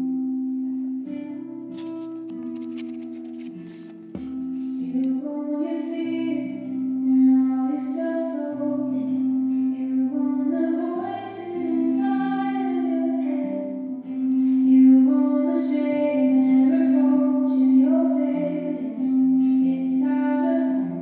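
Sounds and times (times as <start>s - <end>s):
person singing: 4.6s - 21.0s.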